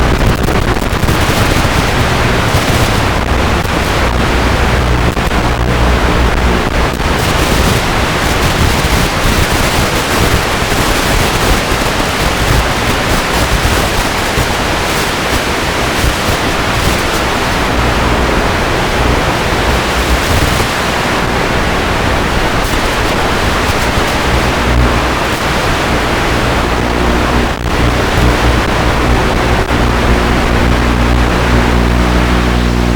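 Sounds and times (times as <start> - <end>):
low motor hum: 0.0 - 8.3, 17.7 - 19.8, 21.0 - 32.9
wind and spinning propellers: 0.0 - 32.9.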